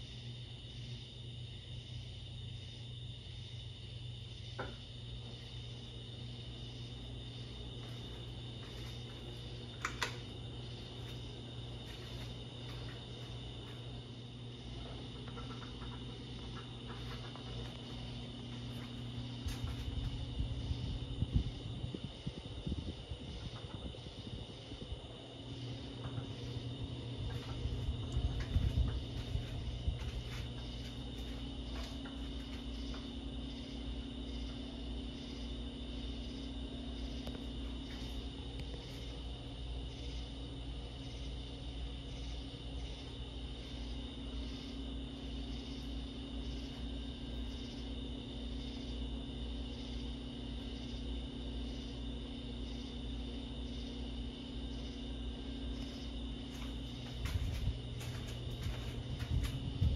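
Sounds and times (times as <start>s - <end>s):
ceiling fan motor hum: 0.0s - 59.9s.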